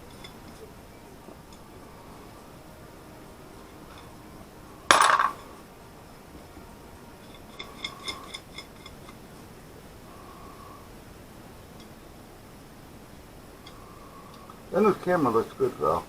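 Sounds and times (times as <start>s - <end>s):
loud metal clank: 4.9s - 5.5s
small metal pieces clinking: 4.9s - 5.5s.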